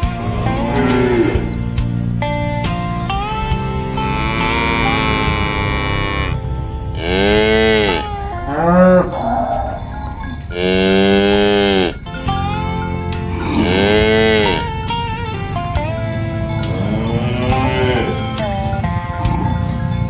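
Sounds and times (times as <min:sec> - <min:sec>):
cows mooing: 0:00.0 - 0:20.0.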